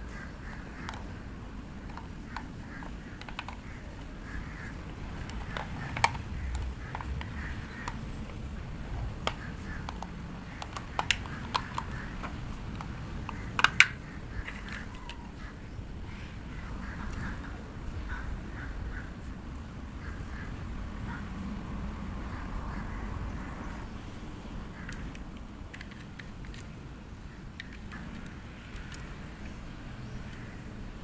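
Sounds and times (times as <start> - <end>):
low background rumble: 0.0 - 25.8
plastic parts and tools clicking: 0.1 - 15.4, 24.8 - 26.8, 27.5 - 29.6.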